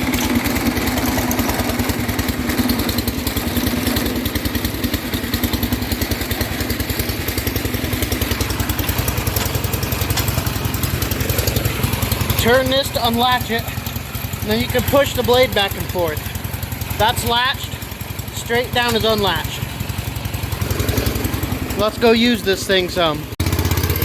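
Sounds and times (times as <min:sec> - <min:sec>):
garden tractor engine idling: 0:00.0 - 0:24.0.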